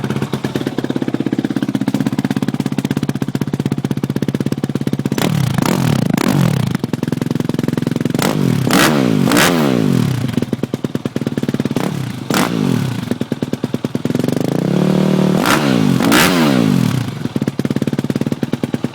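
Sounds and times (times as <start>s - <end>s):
motorcycle engine idling and revving: 0.0s - 18.9s.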